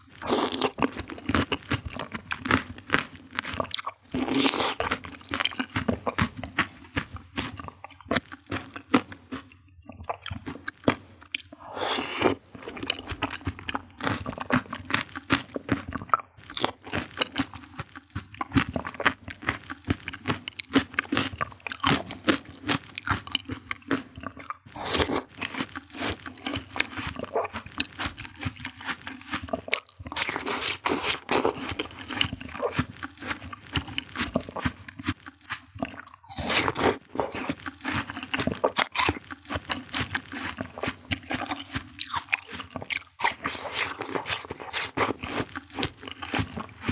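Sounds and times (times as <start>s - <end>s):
crunching and chewing fruit: 0.0s - 46.9s.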